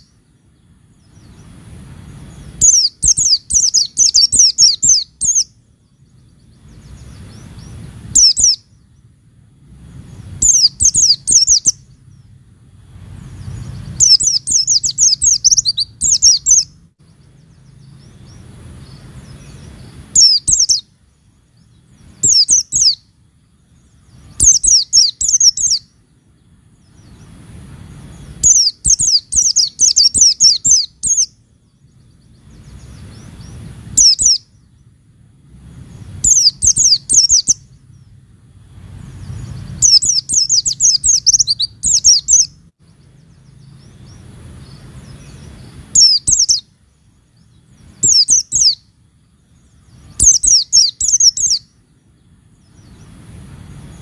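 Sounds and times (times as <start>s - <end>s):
bird twittering: 0.0s - 9.1s, 9.8s - 12.4s, 13.2s - 35.0s, 35.7s - 38.2s, 38.9s - 51.9s
faint low rumble: 0.0s - 54.0s.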